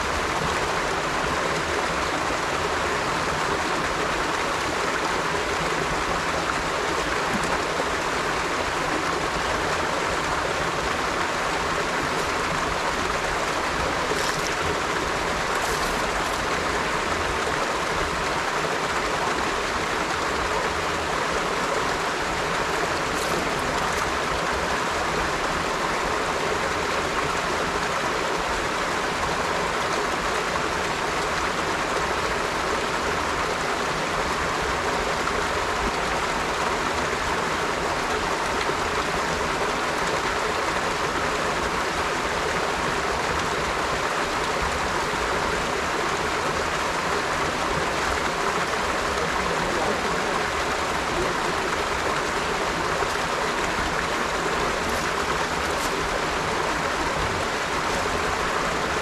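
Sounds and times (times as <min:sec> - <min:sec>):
river water flowing over stones: 0:00.0 - 0:59.0
faint water splashes: 0:05.2 - 0:25.7, 0:46.8 - 0:59.0.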